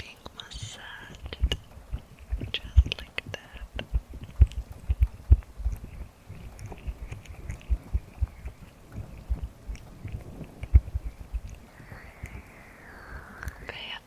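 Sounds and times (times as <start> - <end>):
soft low thumps: 0.7 - 14.0
sticky wet slime squishing: 1.0 - 13.7.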